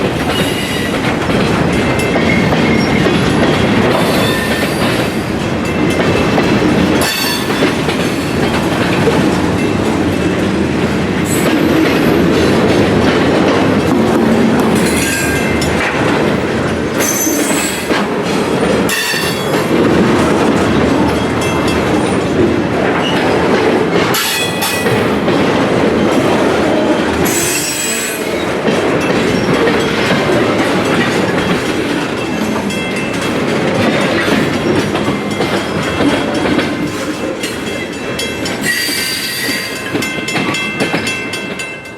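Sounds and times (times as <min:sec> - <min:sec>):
train wheels rumbling on rails: 0:00.0 - 0:41.9
high-pitched wheel squeals: 0:38.6 - 0:39.8.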